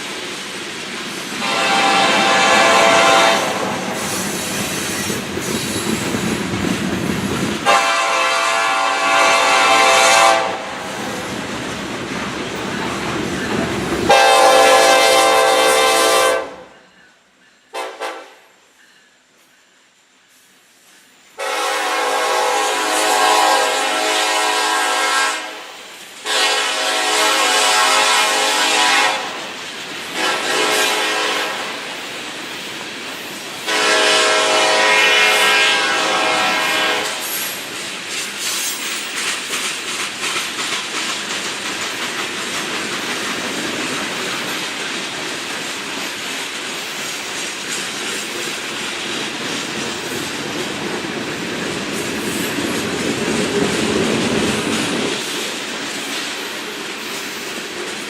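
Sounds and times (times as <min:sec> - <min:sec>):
train rumbling past: 0:00.0 - 0:58.0
locomotive horn blasts: 0:01.4 - 0:04.0, 0:07.6 - 0:11.0, 0:14.1 - 0:16.7, 0:17.7 - 0:18.5, 0:21.4 - 0:29.5, 0:30.1 - 0:31.8, 0:33.7 - 0:37.3
wheels clicking over rail joints: 0:37.0 - 0:58.0.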